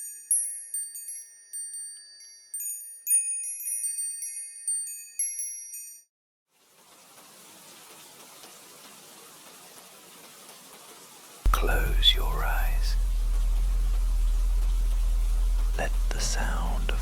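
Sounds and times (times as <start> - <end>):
chimes ringing: 0.0 - 6.1
rain: 6.5 - 17.0.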